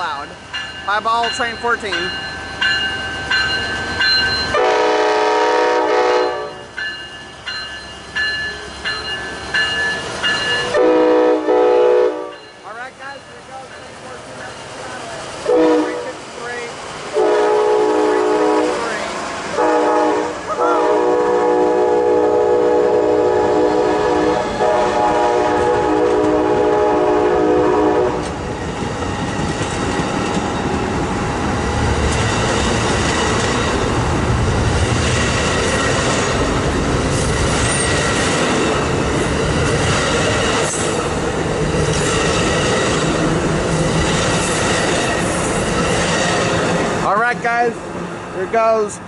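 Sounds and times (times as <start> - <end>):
train rumbling on rails: 0.0 - 49.0
multi-note train air horn: 4.5 - 6.6, 10.7 - 12.4, 15.4 - 16.2, 17.1 - 19.0, 19.6 - 28.3.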